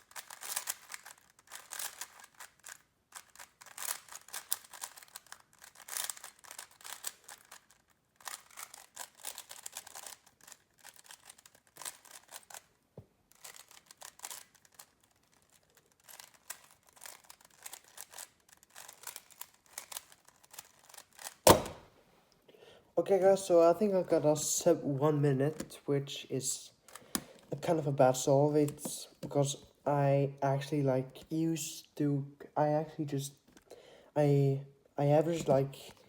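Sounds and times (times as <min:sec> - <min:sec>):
plastic puzzle cube clicking: 0:00.0 - 0:21.8.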